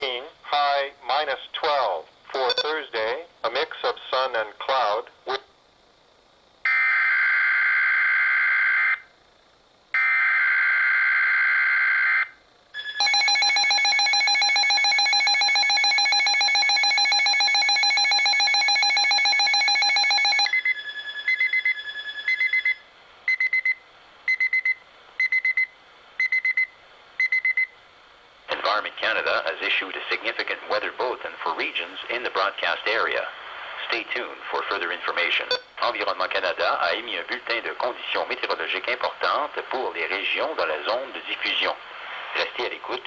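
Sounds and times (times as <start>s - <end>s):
two-tone digital data bursts: 2.4s - 2.8s
warbling alarm tone: 10.0s - 22.8s.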